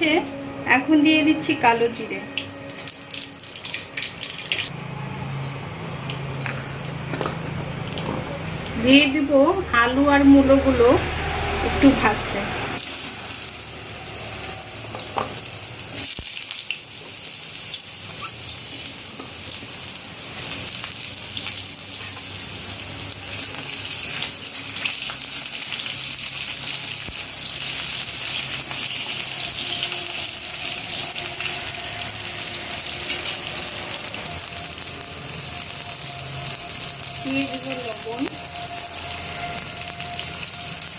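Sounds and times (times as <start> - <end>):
vegetables sizzling in oil: 1.5 - 4.8, 12.8 - 40.9.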